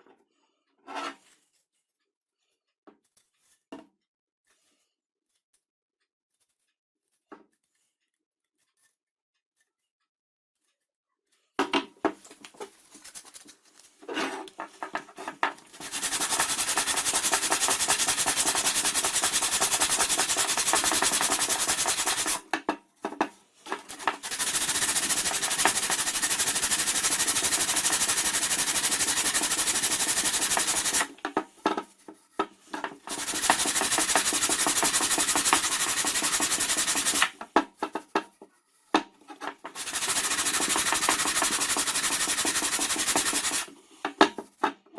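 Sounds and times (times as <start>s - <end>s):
clicks and handling noises: 11.6s - 15.9s, 22.1s - 24.2s, 30.5s - 33.6s
power tool cutting wood: 15.7s - 22.4s, 23.9s - 31.2s, 33.0s - 37.4s, 39.7s - 43.7s.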